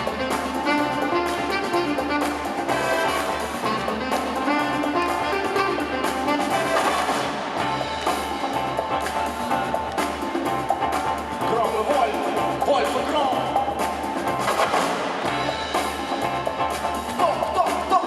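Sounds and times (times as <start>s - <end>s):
brass horns playing: 0.0s - 9.0s
steady drum beat: 0.0s - 18.0s.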